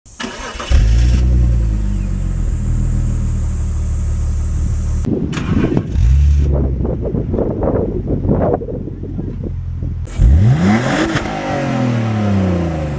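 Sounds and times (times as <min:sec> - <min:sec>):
engine cranking and starting: 0:00.1 - 0:01.4, 0:05.3 - 0:06.5
car engine idling: 0:00.2 - 0:10.4.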